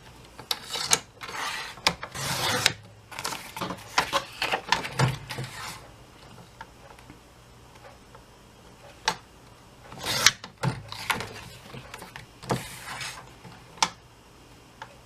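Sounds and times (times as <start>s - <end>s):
paper trimmer blade rasping: 0.6s - 2.8s, 10.0s - 10.4s.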